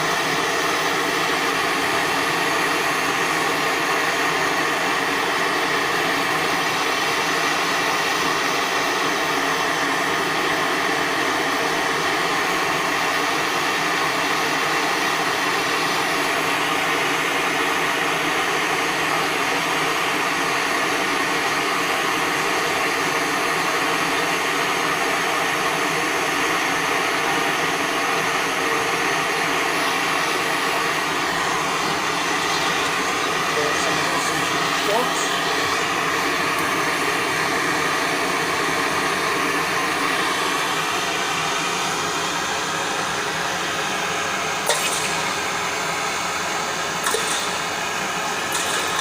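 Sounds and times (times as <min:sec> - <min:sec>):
gas torch flame hissing: 0:44.6 - 0:49.0.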